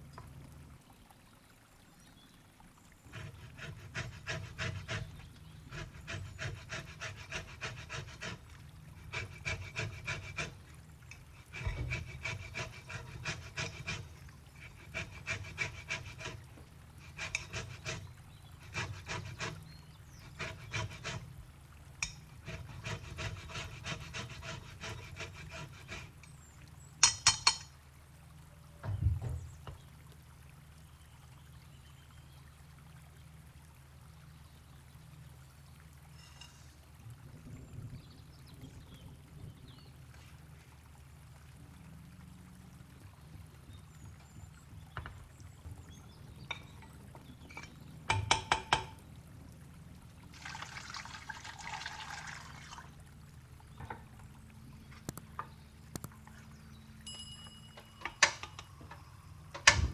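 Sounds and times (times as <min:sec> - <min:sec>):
kitchen utensil scraping food: 0:03.1 - 0:21.3, 0:22.0 - 0:26.3, 0:27.0 - 0:27.7, 0:36.2 - 0:36.7, 0:47.4 - 0:48.9.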